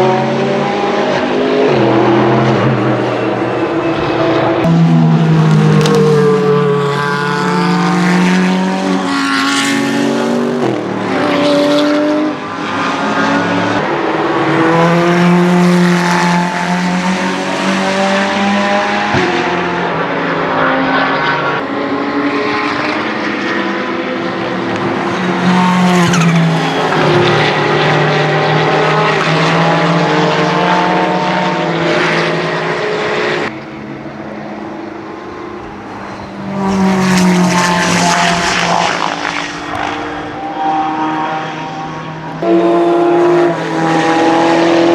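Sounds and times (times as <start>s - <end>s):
race car engine shifting gears: 0.2s - 19.4s, 24.2s - 32.4s.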